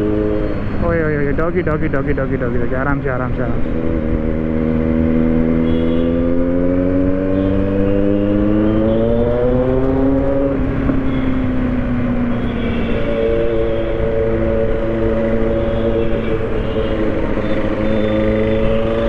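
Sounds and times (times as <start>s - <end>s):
motorcycle engine accelerating: 3.7s - 12.0s.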